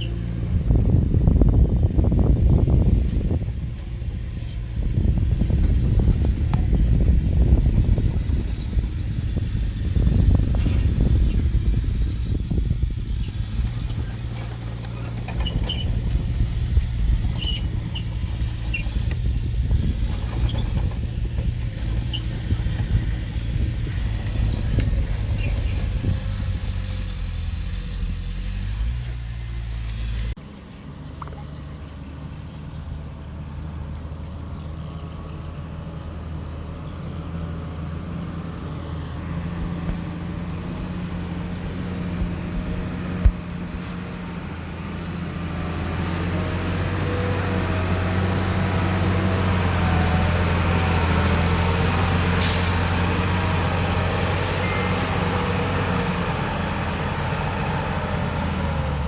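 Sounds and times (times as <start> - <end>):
faint high squeaks: 0.0 - 0.5, 13.3 - 23.2, 24.3 - 30.1
diesel engine rumbling: 0.0 - 59.0.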